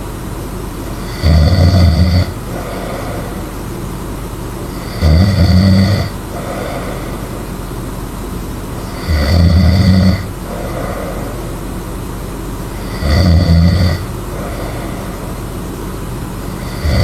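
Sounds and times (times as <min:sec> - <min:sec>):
person snoring loudly: 0:01.0 - 0:03.6, 0:04.7 - 0:07.5, 0:08.8 - 0:11.8, 0:12.7 - 0:15.5, 0:16.4 - 0:17.0.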